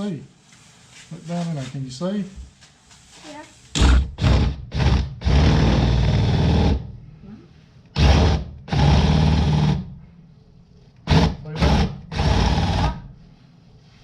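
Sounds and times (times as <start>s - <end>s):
electric drill boring: 3.8s - 6.8s, 8.0s - 9.8s, 11.1s - 13.0s.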